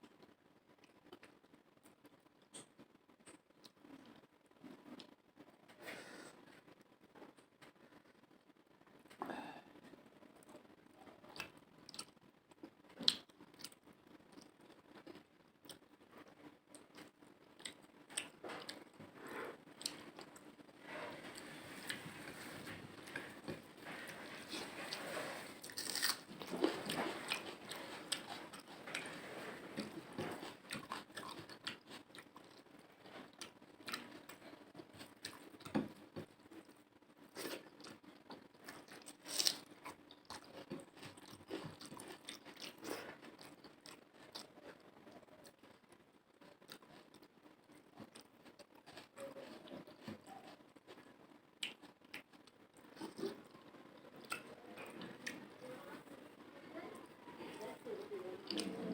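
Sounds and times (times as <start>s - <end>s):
person chewing food: 10.4s - 56.2s
food crunch: 24.4s - 32.7s.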